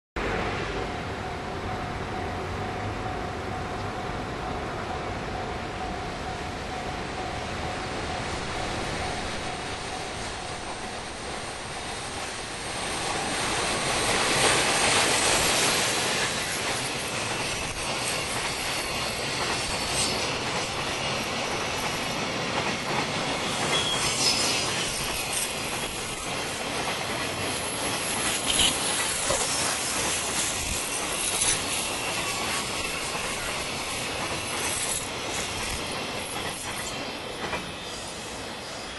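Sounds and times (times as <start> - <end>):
freight train rolling past: 0.2 - 38.9
high-pitched wheel squeals: 23.4 - 25.9.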